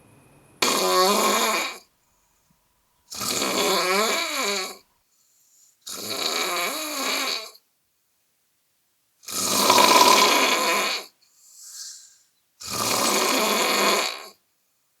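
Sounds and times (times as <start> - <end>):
person snoring: 0.6 - 1.8, 3.1 - 4.8, 5.9 - 7.5, 9.3 - 14.4
faint breath: 2.0 - 2.6, 5.0 - 5.9, 11.2 - 12.4.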